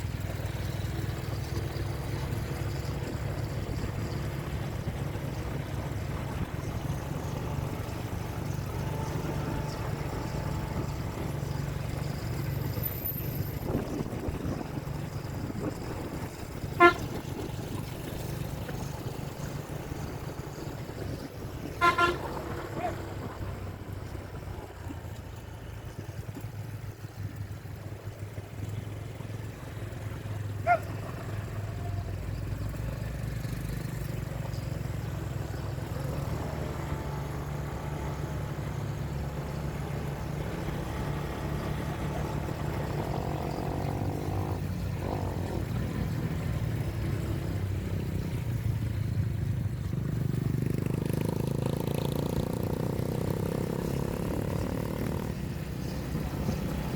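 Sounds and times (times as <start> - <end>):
vehicle engine running: 0.0 - 56.9
short horn beep: 21.7 - 22.9.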